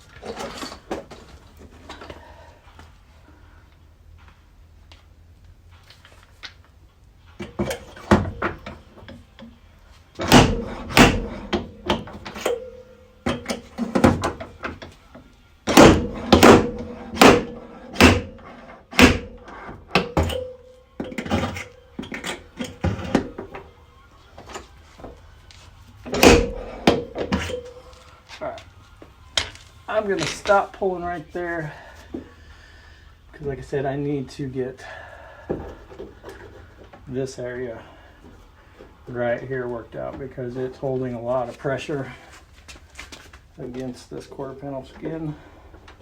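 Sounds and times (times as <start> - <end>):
metal panel ringing: 10.2 - 13.7, 20.0 - 21.2, 26.1 - 27.9
slide hammer knocking on metal: 15.7 - 19.4.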